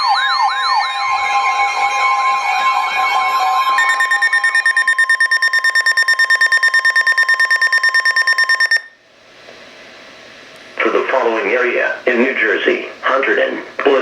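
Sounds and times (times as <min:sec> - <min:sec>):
rapid electronic beeping: 0:00.0 - 0:01.8, 0:03.7 - 0:09.0
warbling siren: 0:00.0 - 0:08.8
steady high tone: 0:00.0 - 0:09.0.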